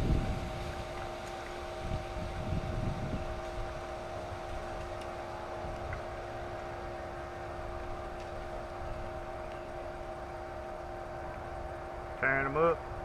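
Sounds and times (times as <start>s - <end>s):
wind on microphone: 0.0s - 10.0s
steady hum: 0.0s - 13.0s.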